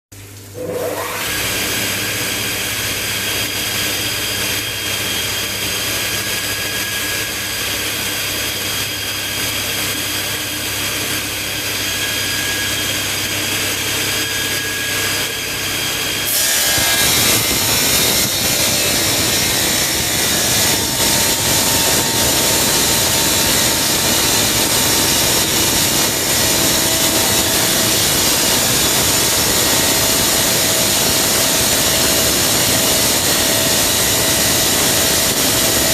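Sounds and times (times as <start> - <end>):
saw motor humming: 12.4 - 35.9.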